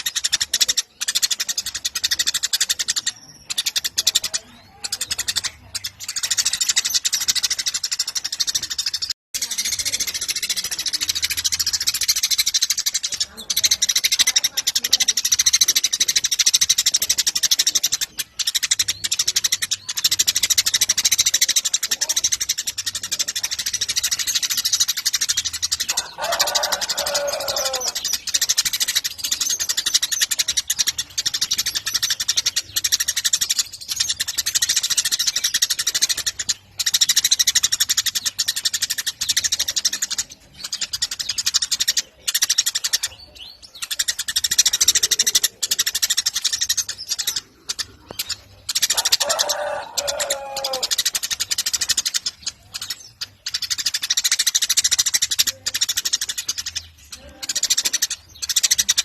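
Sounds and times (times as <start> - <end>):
sparrows chirping: 0.0 - 59.0.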